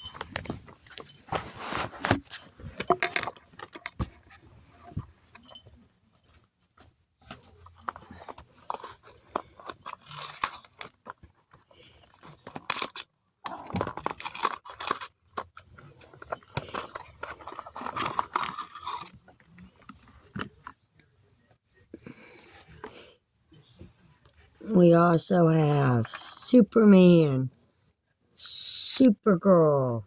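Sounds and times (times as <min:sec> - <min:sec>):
toy packaging clicks and rustling: 0:00.0 - 0:04.4, 0:07.6 - 0:20.8.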